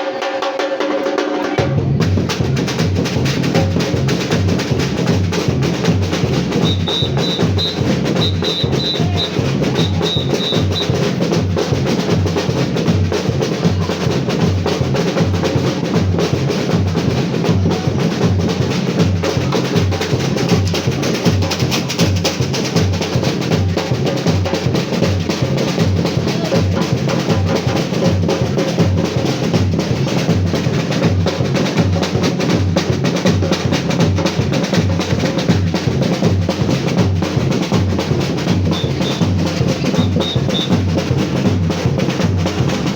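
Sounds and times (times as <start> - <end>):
samba percussion drumming: 0.0 - 42.9
deep bass drum beats: 1.6 - 42.9
snare drum strokes: 2.7 - 28.4, 29.0 - 42.9.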